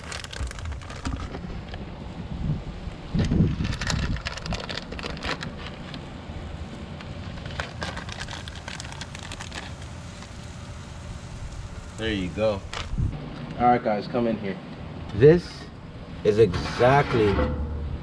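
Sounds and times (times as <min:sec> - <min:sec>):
fat crackling and popping: 0:00.0 - 0:13.6
burger patties sizzling on grill: 0:04.8 - 0:13.2.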